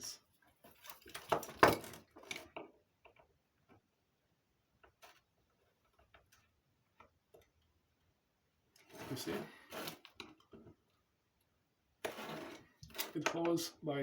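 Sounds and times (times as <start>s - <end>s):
small parts clicking and scraping: 8.7s - 10.8s, 12.0s - 13.6s.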